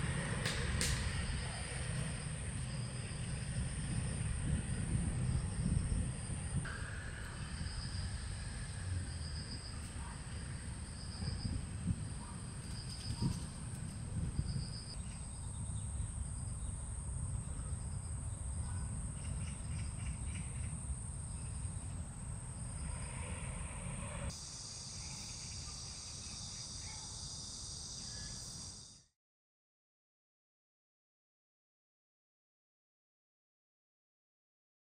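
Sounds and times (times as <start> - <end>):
low rumble: 0.0 - 15.0, 19.8 - 24.3
insect chirp: 0.0 - 29.1
insects trilling: 0.0 - 29.1.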